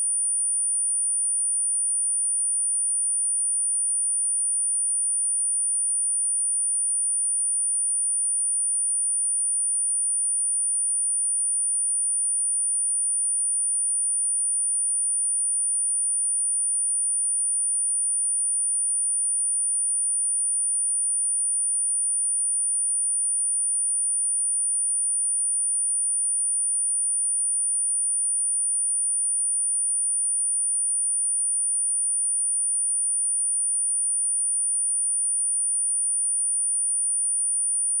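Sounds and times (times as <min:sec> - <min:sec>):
high-pitched sine-wave test tone: 0:00.0 - 0:38.0.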